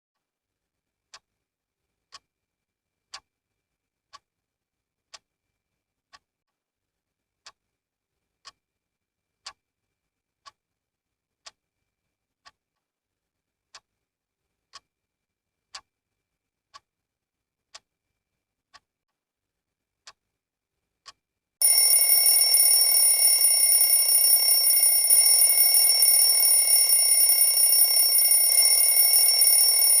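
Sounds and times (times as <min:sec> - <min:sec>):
alarm ringing: 0:21.6 - 0:30.0
clock ticking: 0:21.6 - 0:30.0.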